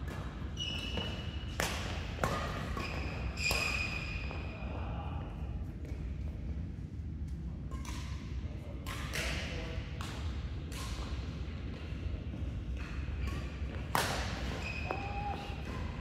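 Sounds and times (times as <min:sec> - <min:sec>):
rackets hitting shuttlecock: 0:00.0 - 0:03.9, 0:08.8 - 0:11.8, 0:12.7 - 0:16.0
shoe squeak: 0:00.6 - 0:01.6, 0:02.8 - 0:04.5, 0:14.5 - 0:15.3.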